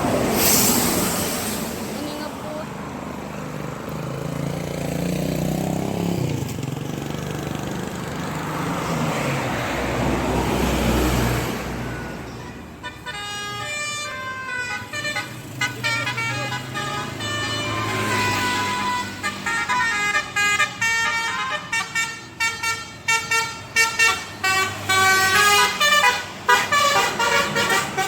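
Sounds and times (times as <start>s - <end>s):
large vehicle passing: 0.0s - 12.3s, 14.4s - 21.0s
multi-tone bus horn tune: 11.8s - 28.0s.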